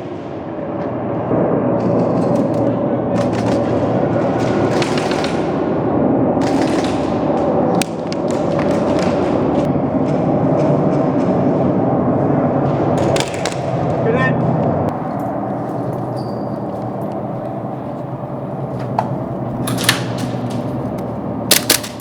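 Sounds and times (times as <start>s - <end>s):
loud steady background noise: 0.0s - 22.0s
airsoft guns firing: 2.6s - 9.7s, 18.4s - 22.0s.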